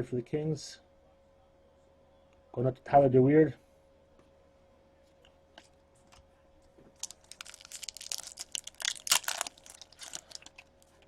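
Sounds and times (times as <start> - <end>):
wrapper crinkling and tearing: 7.0 - 11.0.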